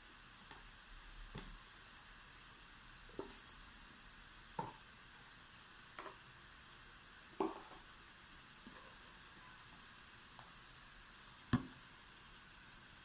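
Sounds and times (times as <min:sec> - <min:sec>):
faint steady hiss: 0:00.0 - 0:13.0.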